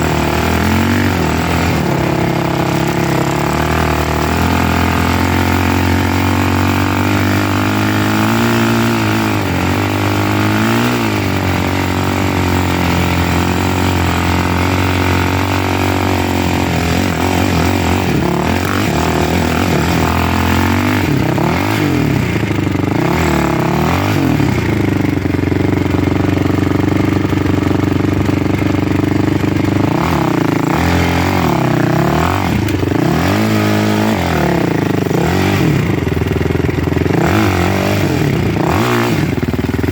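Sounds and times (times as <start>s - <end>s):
vehicle engine revving: 0.0s - 39.9s.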